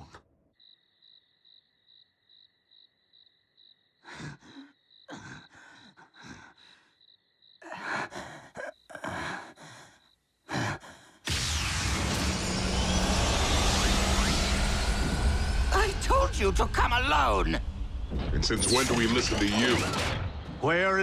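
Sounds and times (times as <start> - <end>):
short noisy rushes: 11.3 - 15.8.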